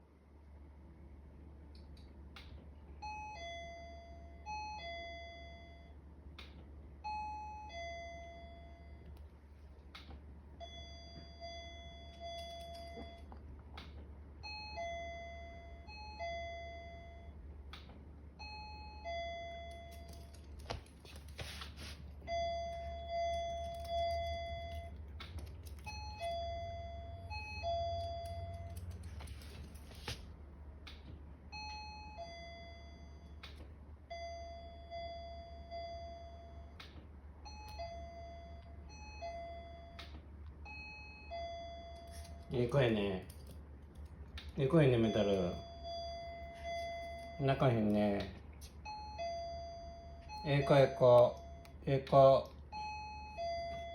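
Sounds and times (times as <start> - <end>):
low steady hum: 0.0 - 53.9
two-note doorbell chime: 3.0 - 6.0, 7.0 - 9.1, 14.4 - 17.3, 18.4 - 20.5, 25.8 - 28.8, 44.6 - 48.2, 48.8 - 53.9.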